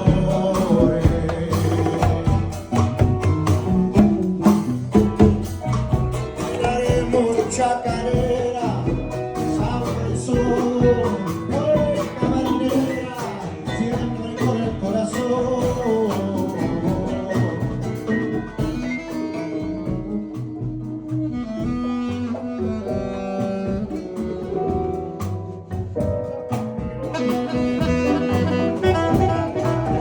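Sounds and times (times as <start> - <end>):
person singing: 0.0 - 3.3, 6.4 - 20.7, 27.0 - 30.0
hand percussion: 0.0 - 30.0
sharp drum strikes: 0.0 - 30.0.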